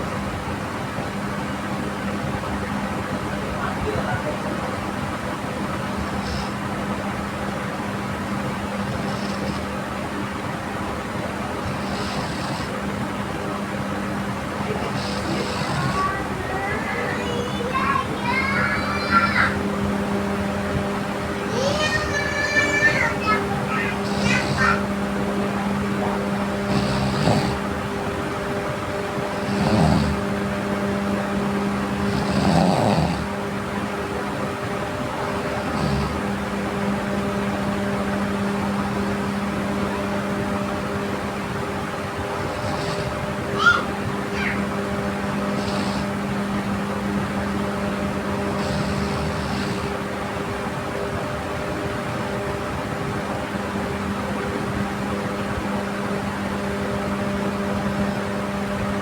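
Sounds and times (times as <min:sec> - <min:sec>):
steady low hum: 0:00.0 - 0:59.0
person snoring: 0:08.8 - 0:09.7, 0:14.7 - 0:16.3, 0:23.3 - 0:24.9, 0:26.7 - 0:27.7, 0:29.3 - 0:30.2, 0:32.0 - 0:33.3, 0:35.6 - 0:36.2, 0:48.5 - 0:50.0.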